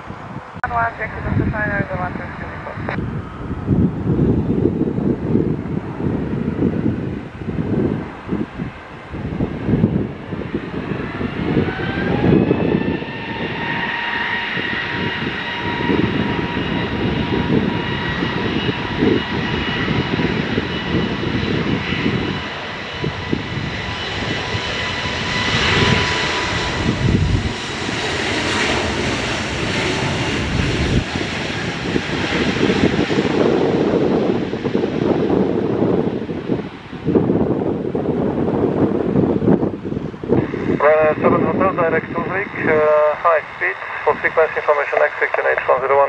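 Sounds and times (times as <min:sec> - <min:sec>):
wind buffeting microphone: 0:00.0 - 0:45.7
jet engines spooling up: 0:09.9 - 0:39.3, 0:40.0 - 0:46.0.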